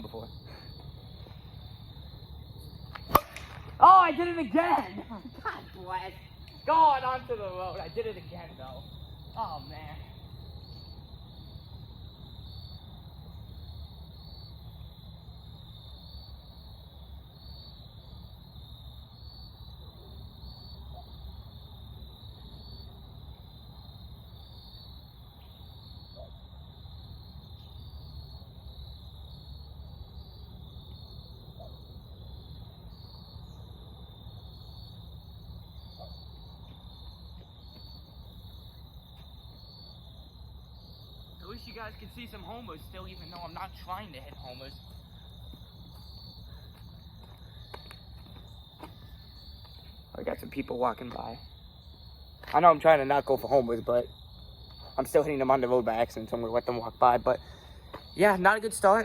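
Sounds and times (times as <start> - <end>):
high insect chorus: 0.0 - 59.0
low outdoor rumble: 0.0 - 59.0.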